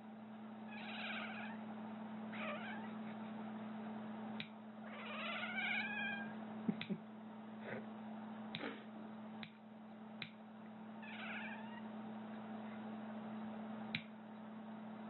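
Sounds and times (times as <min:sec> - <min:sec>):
cat yowling: 0:00.7 - 0:01.6, 0:02.3 - 0:03.0, 0:04.9 - 0:06.4, 0:11.0 - 0:11.9.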